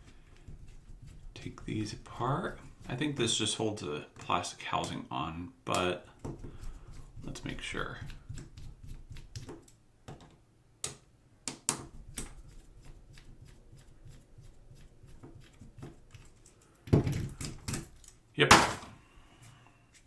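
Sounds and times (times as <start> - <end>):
plastic parts clattering: 18.5 - 19.0.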